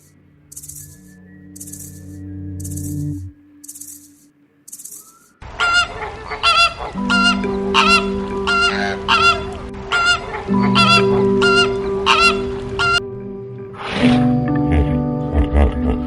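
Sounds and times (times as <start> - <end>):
sustained music tones: 0.0 - 16.0
bird honking calls: 4.8 - 13.0.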